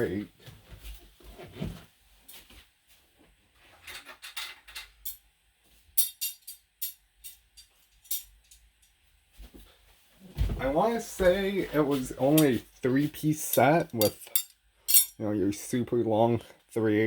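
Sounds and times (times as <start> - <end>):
steel hand tools clinking: 6.0 - 8.6, 13.4 - 15.2.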